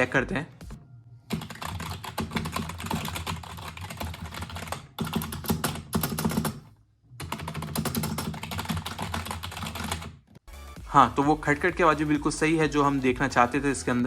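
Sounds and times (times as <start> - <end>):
fast typing on keyboard: 1.3 - 6.6, 7.2 - 10.2.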